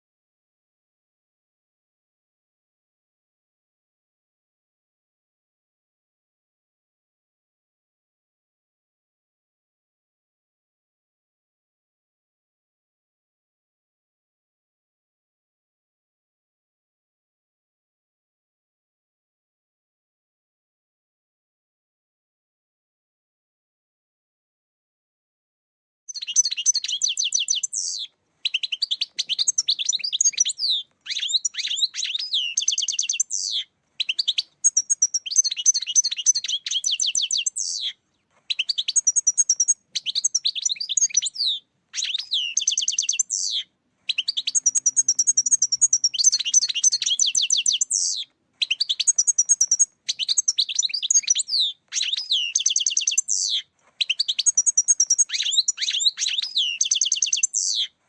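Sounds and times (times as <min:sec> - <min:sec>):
goldfinch twittering and trilling: 0:26.2 - 0:57.9.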